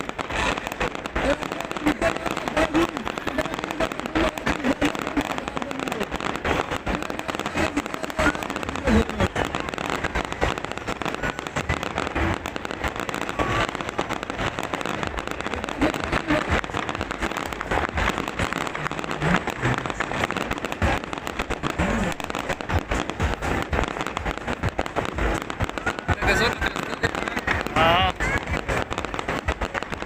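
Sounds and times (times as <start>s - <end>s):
fireworks crackling: 0.0s - 30.0s
murmur of voices: 0.0s - 30.0s.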